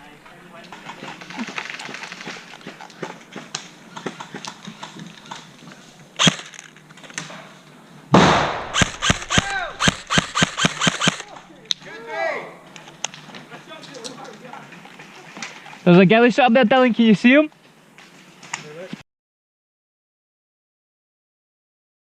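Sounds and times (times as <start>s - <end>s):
airsoft gunfire: 6.2s - 6.6s, 8.1s - 11.4s.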